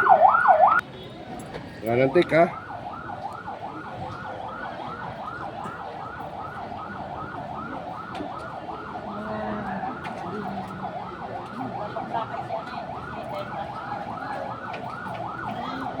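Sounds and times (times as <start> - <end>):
electronic siren yelping: 0.0 - 0.8.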